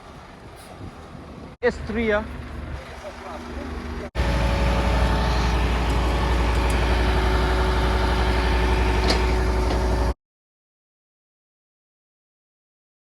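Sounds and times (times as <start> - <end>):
diesel truck engine droning: 2.2 - 10.2.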